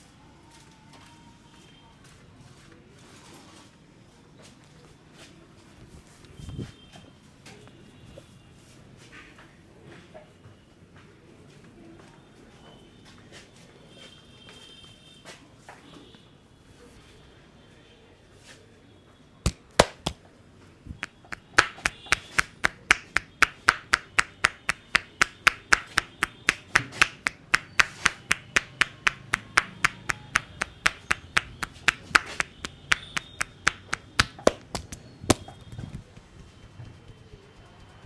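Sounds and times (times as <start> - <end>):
hands slapping head rhythmically: 19.4 - 20.2, 21.0 - 35.6.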